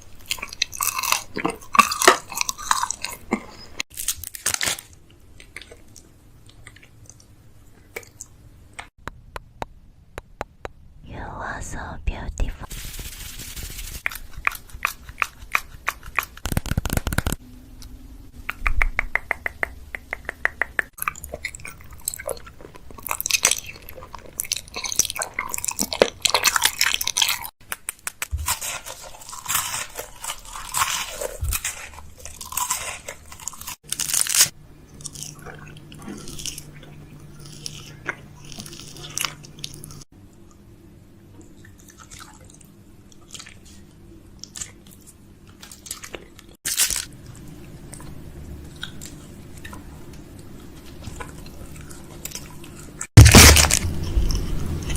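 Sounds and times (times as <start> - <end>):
objects crunching and crinkling: 0.1 - 7.2, 12.7 - 17.4, 21.0 - 40.1, 43.1 - 54.9.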